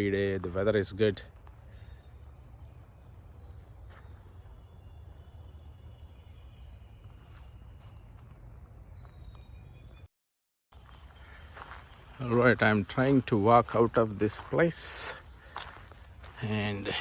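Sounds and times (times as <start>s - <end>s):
faint bird chirps: 0.0s - 10.1s, 10.8s - 13.2s.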